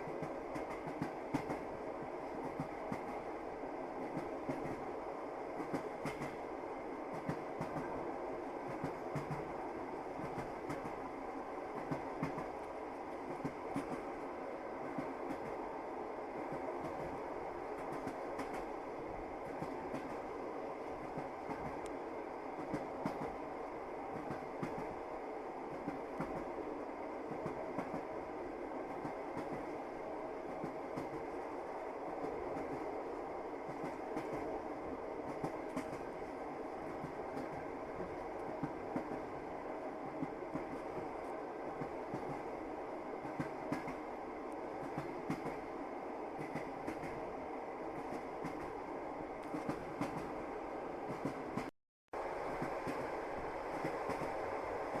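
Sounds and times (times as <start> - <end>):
train carriage rumble: 0.0 - 55.0.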